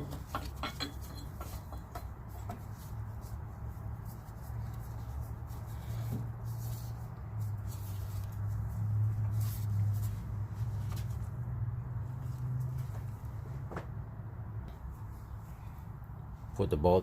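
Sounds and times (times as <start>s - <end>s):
metal bracket scraping and clicking: 0.0s - 2.8s.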